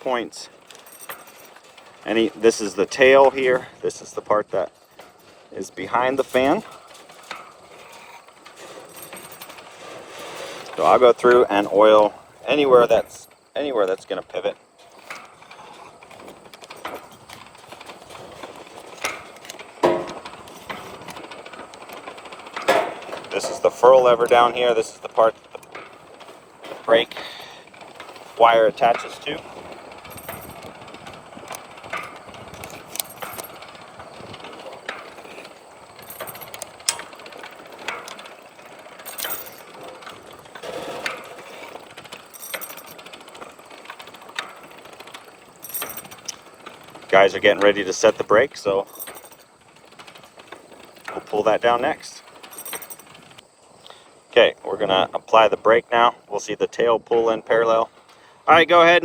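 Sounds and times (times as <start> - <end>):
metal parts knocking and clicking: 6.1 - 12.0, 14.9 - 53.4.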